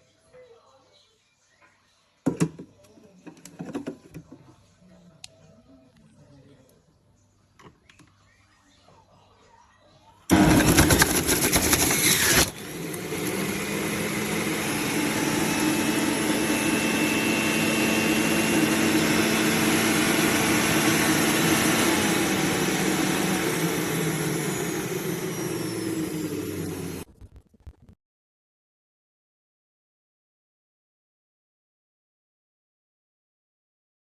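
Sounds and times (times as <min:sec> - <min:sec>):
electric juicer running: 0:10.3 - 0:27.4.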